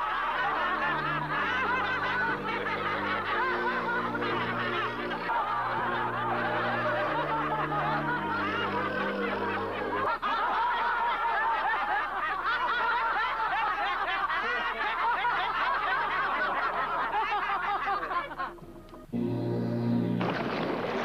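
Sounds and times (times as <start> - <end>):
low held music notes: 0.0 - 10.2, 18.5 - 20.9
group of people laughing: 0.0 - 19.1.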